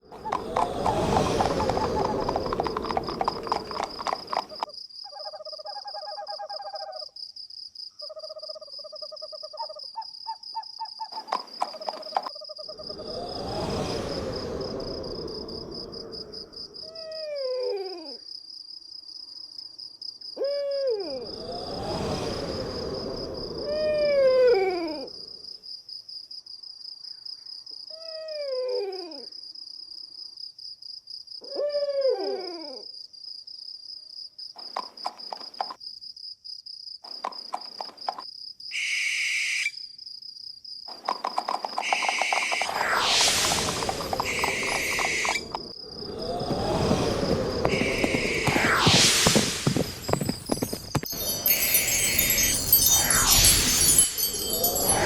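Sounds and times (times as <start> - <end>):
wind whooshes: 0.0 - 4.6, 12.7 - 16.9, 21.1 - 25.2, 42.5 - 55.0
crickets chirping: 0.0 - 55.0
owl hooting: 0.1 - 7.0, 20.4 - 21.2, 38.8 - 39.7, 41.8 - 49.4
hoofbeats: 47.1 - 51.8.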